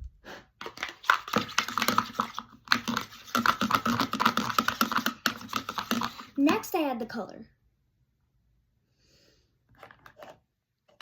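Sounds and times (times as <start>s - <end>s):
slime stirring sticky clicks: 0.8s - 6.4s.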